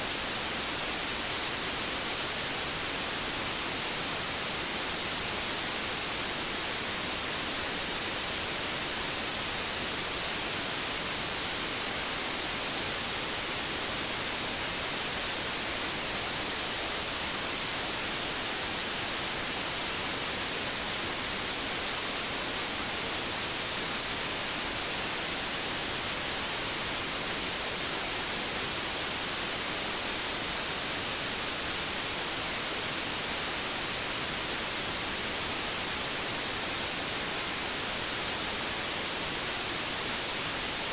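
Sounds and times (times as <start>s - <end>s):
steady white noise hiss: 0.0s - 40.9s.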